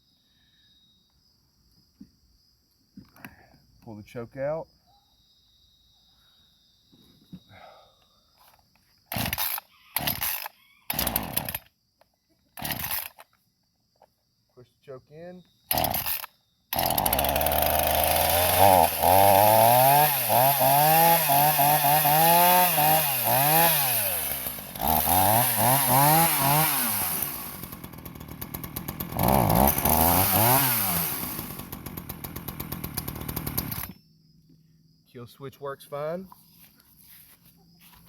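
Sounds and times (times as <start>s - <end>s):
chainsaw engine revving and idling: 9.1s - 11.7s, 12.6s - 13.2s, 15.7s - 34.0s.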